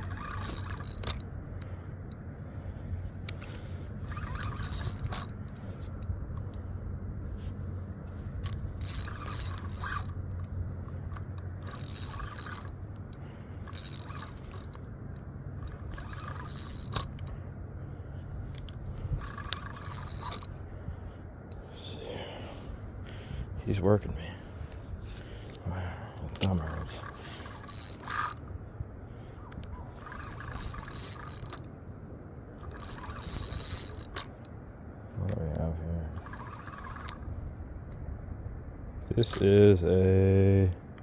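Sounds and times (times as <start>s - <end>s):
fishing reel whirring: 0.0s - 6.7s, 7.7s - 22.6s, 26.3s - 31.8s, 32.6s - 34.5s, 36.2s - 38.0s
low hum: 0.0s - 41.0s.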